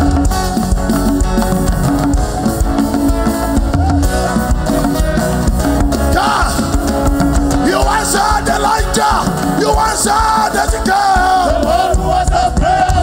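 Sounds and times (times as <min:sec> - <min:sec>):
band playing worship music: 0:00.0 - 0:13.0
person singing: 0:06.0 - 0:06.9, 0:07.5 - 0:13.0.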